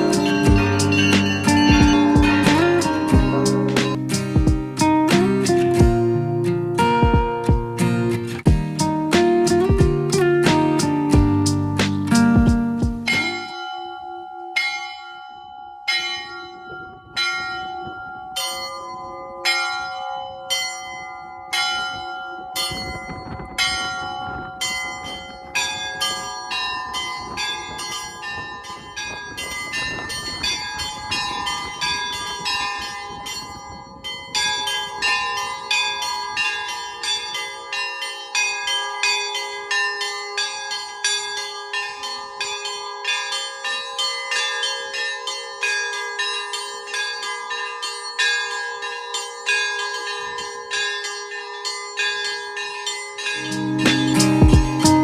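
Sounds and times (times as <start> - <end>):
single bell striking: 0.0 - 4.1, 13.1 - 15.2, 53.3 - 55.0
church bells pealing: 0.0 - 7.0, 13.1 - 55.0
ringing of larger bells: 0.0 - 7.1, 13.0 - 55.0.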